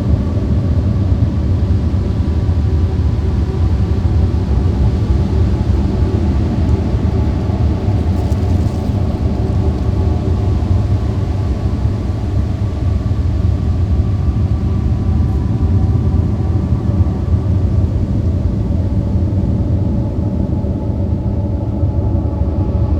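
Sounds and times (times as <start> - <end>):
low rumbling drone: 0.0 - 22.9.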